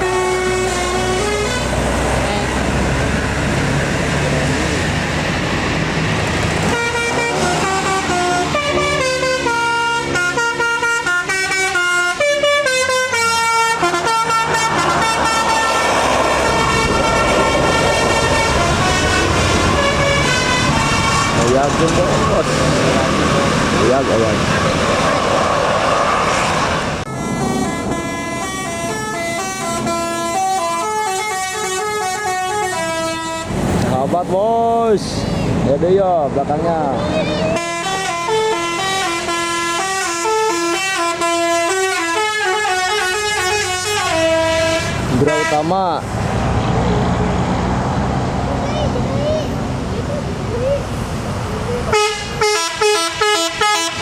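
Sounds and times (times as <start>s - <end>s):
musical bus horn melody: 0.0s - 2.8s, 6.7s - 24.0s, 27.0s - 33.6s, 37.2s - 45.8s, 51.9s - 54.0s
bus engine passing: 0.0s - 54.0s.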